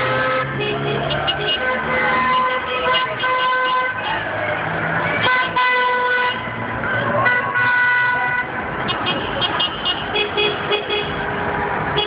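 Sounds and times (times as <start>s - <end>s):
vehicle horns honking: 0.0s - 4.3s, 5.0s - 11.3s
street traffic: 0.0s - 12.0s.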